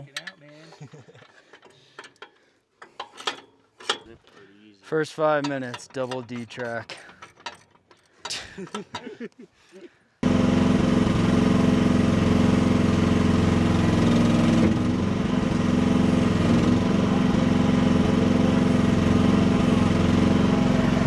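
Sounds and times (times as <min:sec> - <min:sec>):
excavator engine running: 0:10.2 - 0:21.0.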